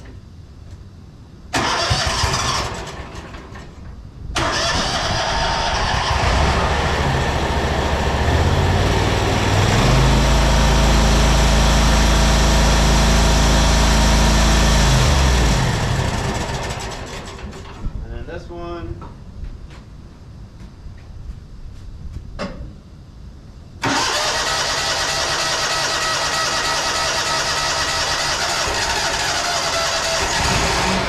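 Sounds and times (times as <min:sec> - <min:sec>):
mower engine running: 0:04.4 - 0:17.6, 0:23.8 - 0:31.0.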